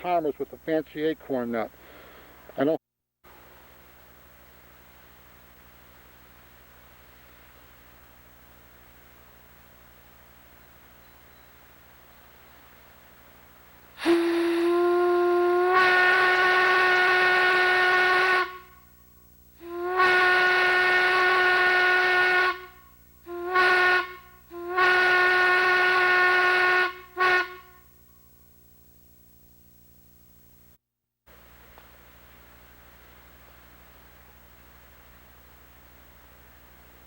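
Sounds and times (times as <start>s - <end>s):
steam whistle blasts: 14.0s - 19.0s, 19.6s - 28.0s.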